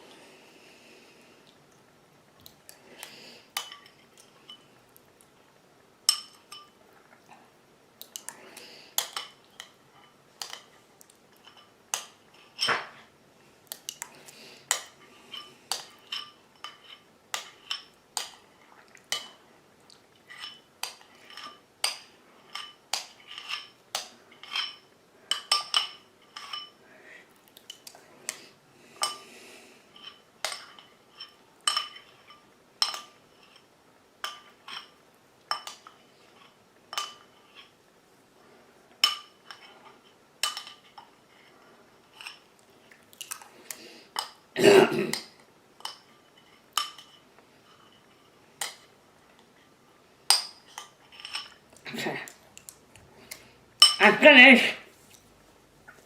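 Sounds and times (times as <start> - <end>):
cutlery clinking on a plate: 6.1 - 6.8, 14.7 - 18.4, 20.3 - 26.8, 30.0 - 36.0, 45.1 - 48.9, 50.3 - 51.6, 53.8 - 54.0.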